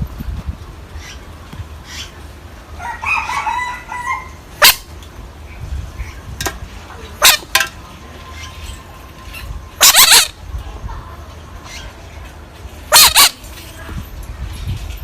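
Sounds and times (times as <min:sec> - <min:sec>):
frog screaming: 0:12.9 - 0:13.4.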